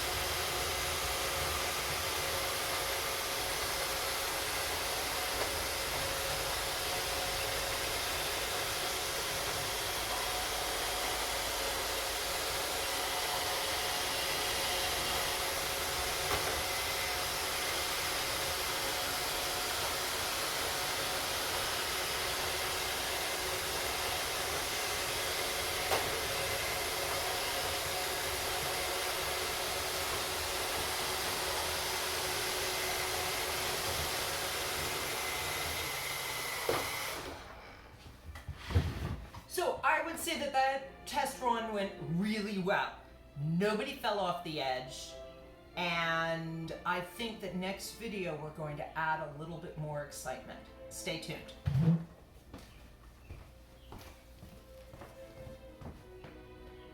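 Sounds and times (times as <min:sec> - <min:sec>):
robot vacuums whirring: 0:00.0 - 0:37.6.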